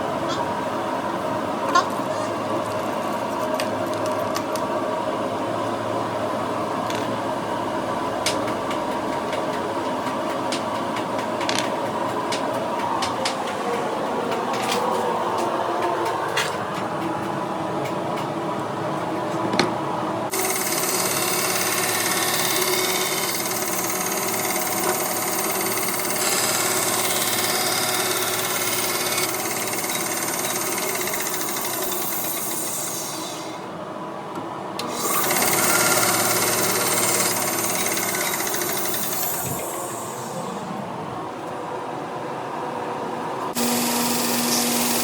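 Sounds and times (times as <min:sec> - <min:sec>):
electric grinder motor hum: 0:20.3 - 0:33.0, 0:34.9 - 0:40.3, 0:43.6 - 0:45.0.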